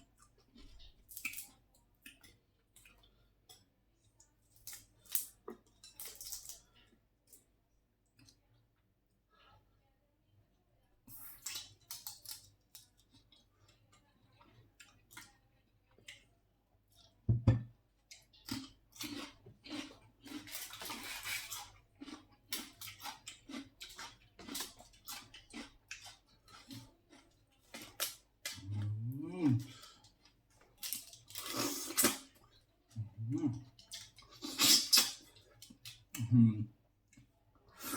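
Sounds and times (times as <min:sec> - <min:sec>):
chewing: 0:00.0 - 0:08.5, 0:11.2 - 0:17.2, 0:18.0 - 0:36.3
person humming: 0:28.7 - 0:29.7, 0:33.0 - 0:33.6, 0:36.2 - 0:36.7.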